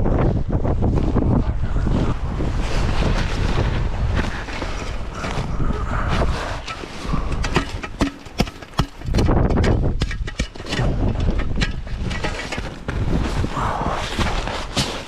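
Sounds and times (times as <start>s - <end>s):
wind rumbling on microphone: 0.0s - 15.0s
tent gear clicks and knocks: 6.2s - 15.0s.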